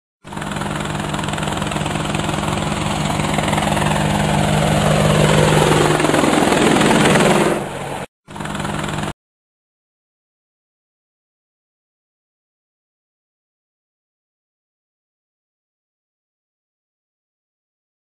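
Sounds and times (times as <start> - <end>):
helicopter rotor drone: 0.2 - 9.2.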